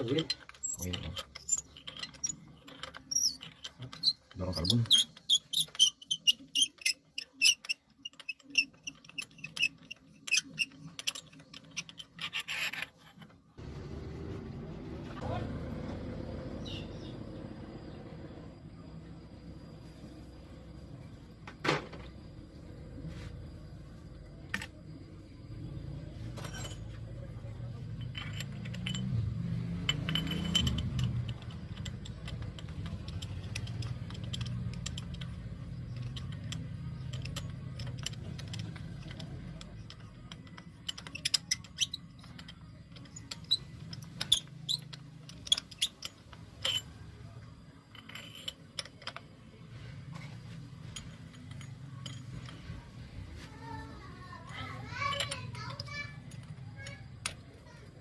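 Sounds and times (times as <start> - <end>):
metal hand tools clinking: 0.0 - 12.9, 26.3 - 58.0.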